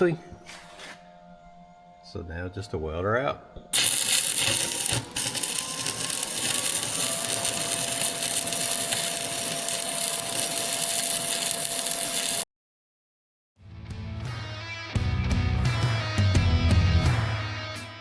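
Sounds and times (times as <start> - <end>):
welding arc crackling: 3.8 - 12.4
rock music: 13.6 - 18.0.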